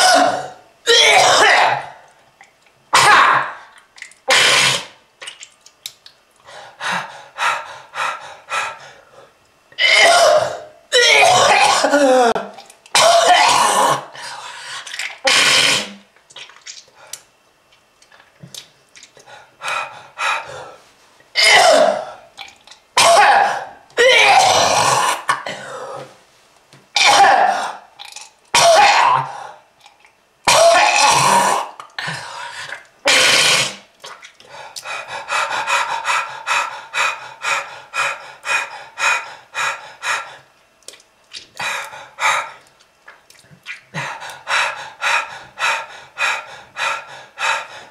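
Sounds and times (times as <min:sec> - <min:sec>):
person coughing: 0:00.0 - 0:02.0, 0:09.8 - 0:14.1, 0:21.4 - 0:22.1, 0:23.0 - 0:26.0
person clearing throat: 0:09.8 - 0:14.1, 0:21.4 - 0:22.1, 0:23.0 - 0:26.1, 0:27.0 - 0:27.8, 0:30.5 - 0:31.8.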